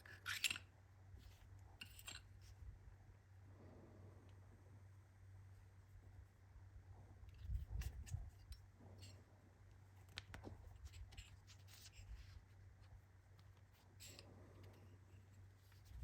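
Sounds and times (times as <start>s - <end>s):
steady low hum: 0.0s - 16.0s
hands handling parts and packaging: 9.7s - 16.0s.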